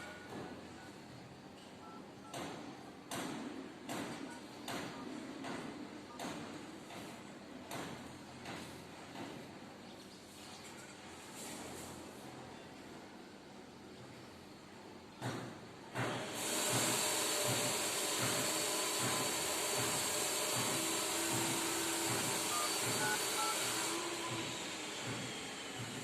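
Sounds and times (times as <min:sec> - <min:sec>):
loud steady hiss: 0:16.3 - 0:26.0.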